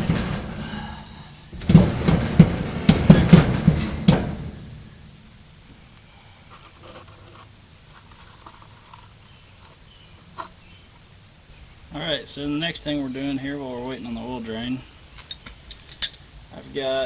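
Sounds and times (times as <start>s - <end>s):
gearing clunking and rattling: 0.0s - 5.9s.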